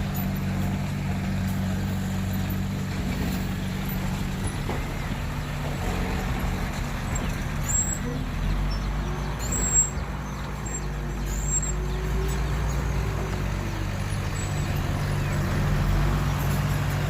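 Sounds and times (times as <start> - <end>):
diesel truck engine running: 0.0 - 17.0
short high squeaks: 7.1 - 8.6, 9.3 - 13.2.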